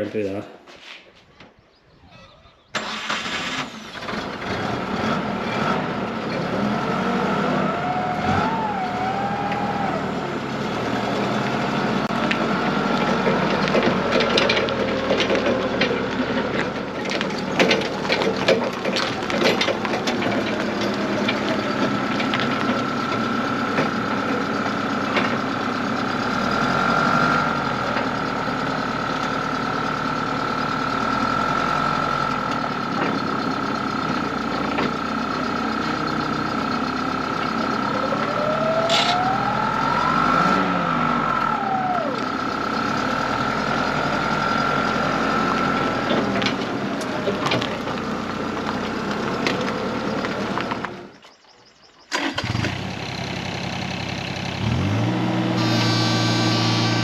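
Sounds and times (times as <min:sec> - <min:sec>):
heavy machine engine running: 0:02.8 - 0:51.2, 0:52.2 - 0:57.0
knocks and clanks: 0:12.2 - 0:24.0
high whine: 0:37.3 - 0:43.5
brief squeak: 0:38.7 - 0:39.5.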